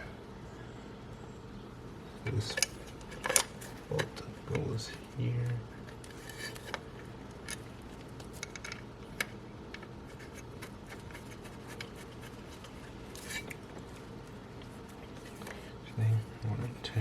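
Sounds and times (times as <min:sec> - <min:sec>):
steady low hum: 0:00.0 - 0:17.0
scraping rattle: 0:05.8 - 0:06.8
metal bolt clicks and scrapes: 0:06.0 - 0:06.8, 0:13.2 - 0:13.6.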